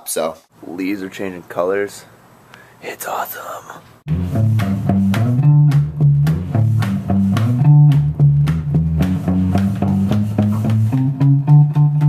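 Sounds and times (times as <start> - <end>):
instrumental music with bass and guitar: 4.1 - 12.0.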